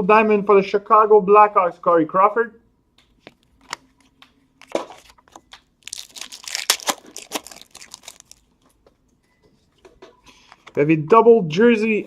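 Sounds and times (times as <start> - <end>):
wrapper tearing and crinkling: 4.6 - 8.6.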